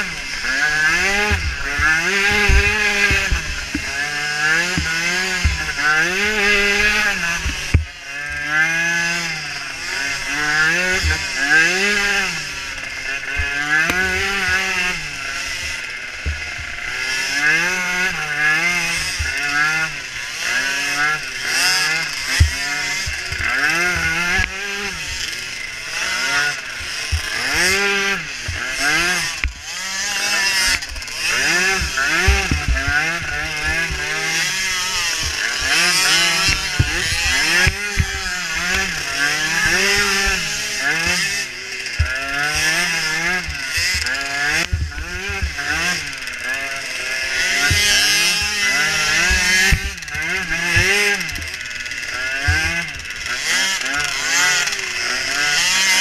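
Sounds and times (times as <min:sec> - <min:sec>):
small atv engines revving: 0:00.0 - 0:56.0.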